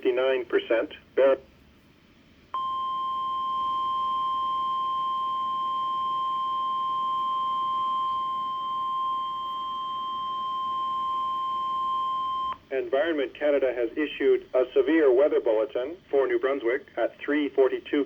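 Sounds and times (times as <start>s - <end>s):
steady alarm tone: 2.6s - 12.6s.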